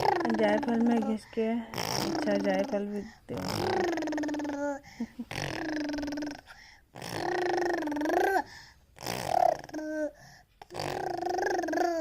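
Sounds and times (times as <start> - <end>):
silly vocal sounds: 3.3 - 12.0.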